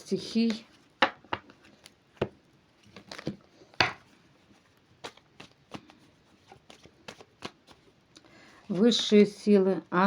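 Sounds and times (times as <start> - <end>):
cards snapping and slapping: 5.0 - 6.0, 6.6 - 7.8.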